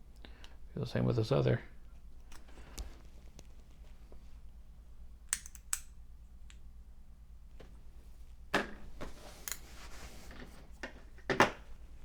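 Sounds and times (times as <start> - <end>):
spade connector clicking: 5.3 - 6.6.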